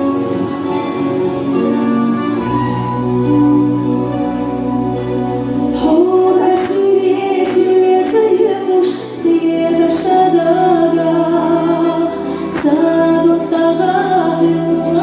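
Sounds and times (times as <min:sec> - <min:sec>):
steady low drone: 0:00.0 - 0:13.9
musical accompaniment: 0:00.0 - 0:15.0
woman singing slow melody: 0:05.7 - 0:15.0.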